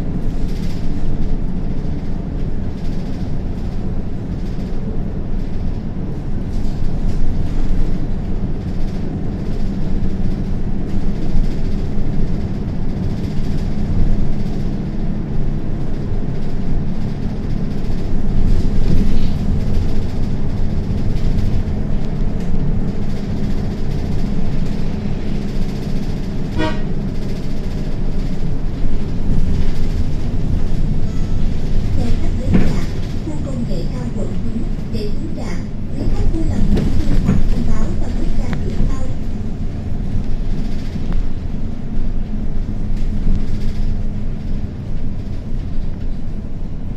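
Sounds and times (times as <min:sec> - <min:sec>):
bus engine rumble: 0:00.0 - 0:46.9
road noise: 0:00.0 - 0:46.9
short horn toot: 0:26.5 - 0:26.9.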